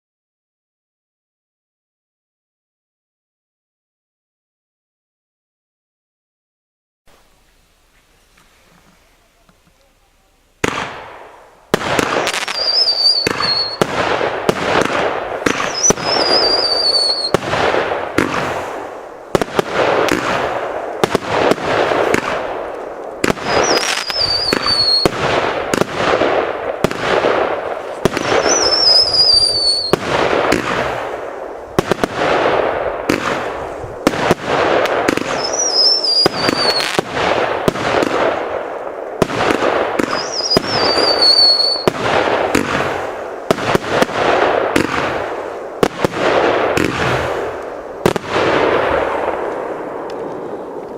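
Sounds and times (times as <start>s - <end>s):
firework bangs and crackling: 7.1s - 50.9s
high whistling tone: 12.4s - 13.8s, 15.7s - 17.3s, 23.4s - 25.1s, 28.3s - 30.0s, 35.3s - 37.0s, 40.1s - 41.9s.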